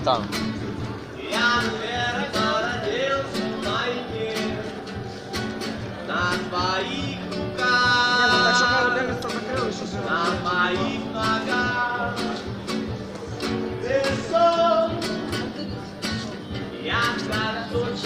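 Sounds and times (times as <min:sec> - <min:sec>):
guitar strumming: 0:00.0 - 0:18.0
person singing: 0:01.2 - 0:05.2.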